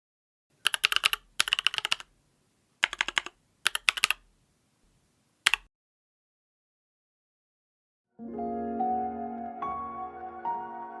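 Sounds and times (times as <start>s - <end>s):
mechanical keyboard typing: 0.6s - 2.1s, 2.8s - 4.3s, 5.4s - 5.7s.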